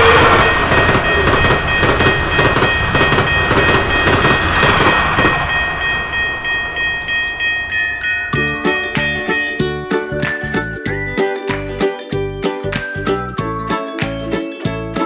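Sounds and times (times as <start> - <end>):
train wheels clacking over rail joints: 0.0 - 5.4
crossing warning signal tones: 0.0 - 9.0.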